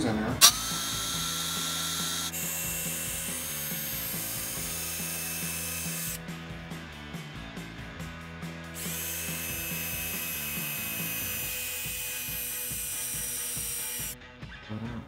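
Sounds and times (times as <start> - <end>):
background music: 0.0 - 15.0
power drill running: 0.4 - 6.2, 8.7 - 14.2.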